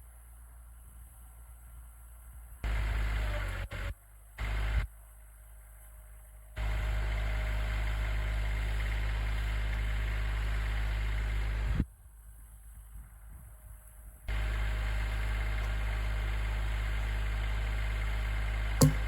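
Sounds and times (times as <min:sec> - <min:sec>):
tractor engine running: 0:14.3 - 0:19.0.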